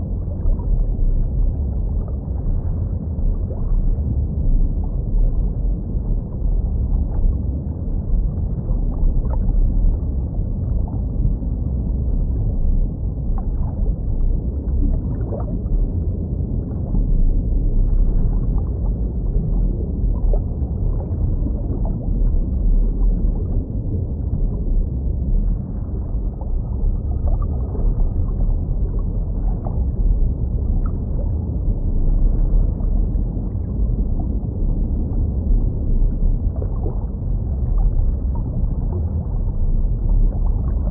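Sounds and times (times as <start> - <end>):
deep rumble of moving water: 0.0 - 40.9
bubbling pops and gurgles: 8.4 - 11.2, 12.4 - 23.8.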